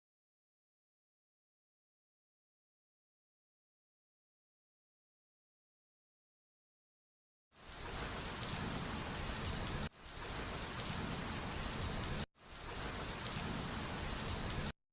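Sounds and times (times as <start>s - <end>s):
rain-like hiss: 7.5s - 14.8s.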